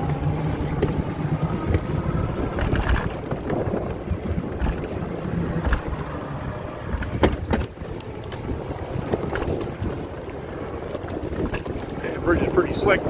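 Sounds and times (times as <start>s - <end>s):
wind buffeting microphone: 0.0s - 13.0s
sharp knocks: 6.9s - 7.8s.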